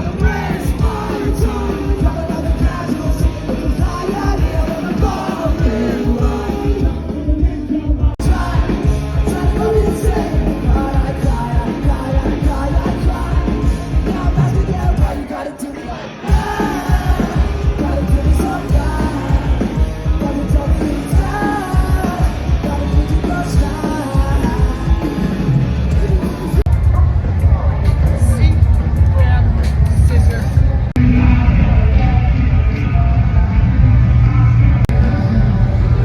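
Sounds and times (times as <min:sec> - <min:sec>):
person singing: 0:00.0 - 0:26.8
live rock band playing: 0:00.0 - 0:36.0.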